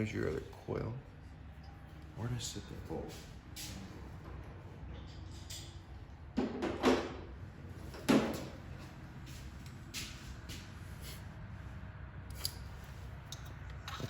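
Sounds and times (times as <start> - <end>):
knocks and clatter of tools: 4.2 - 7.3, 7.9 - 8.6.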